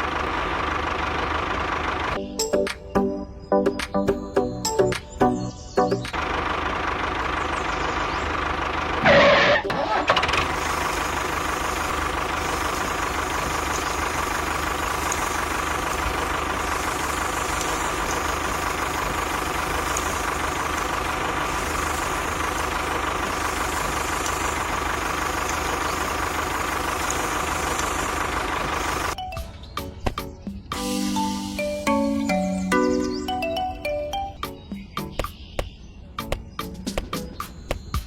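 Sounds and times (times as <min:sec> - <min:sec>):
motor running with whine: 0:09.0 - 0:29.2.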